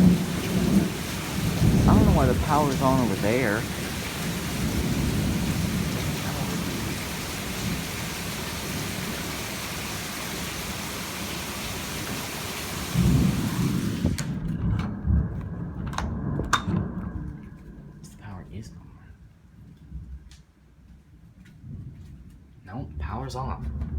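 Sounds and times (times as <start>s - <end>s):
low thunder rumbling: 0.0s - 10.5s, 12.9s - 20.3s, 21.6s - 23.9s
heavy rain pouring: 0.0s - 19.0s.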